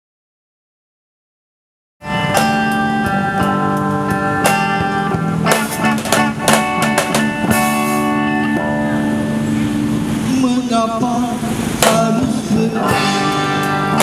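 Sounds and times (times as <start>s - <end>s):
guitar melody over chords: 2.0s - 14.0s
sharp percussion hits: 2.1s - 9.7s.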